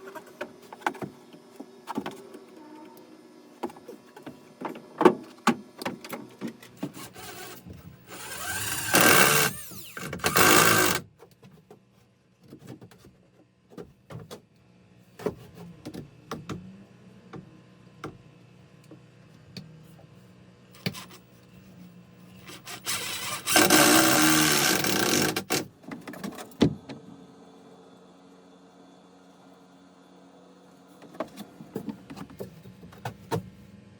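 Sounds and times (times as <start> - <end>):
handheld power tool bursts: 7.0 - 11.0, 22.4 - 25.6.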